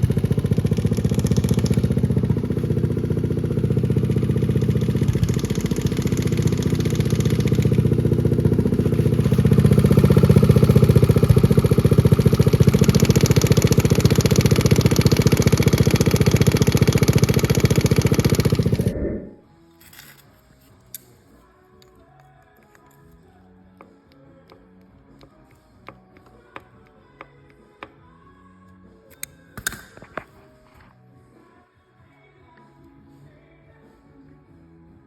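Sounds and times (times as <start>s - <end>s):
rattle: 0.0s - 19.0s
motorcycle engine idling: 0.0s - 19.2s.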